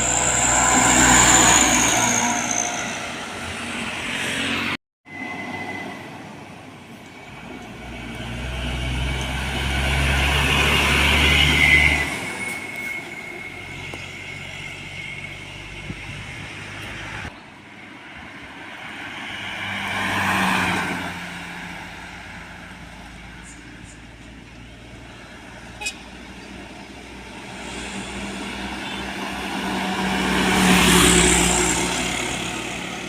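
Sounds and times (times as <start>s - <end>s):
diesel truck passing: 0.0s - 17.3s, 17.9s - 33.0s
vehicle passing: 26.7s - 33.0s.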